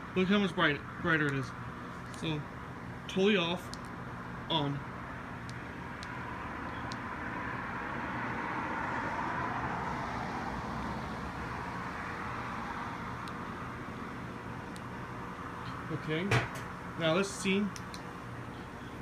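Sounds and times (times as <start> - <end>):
vehicle passing by: 6.3 - 13.8.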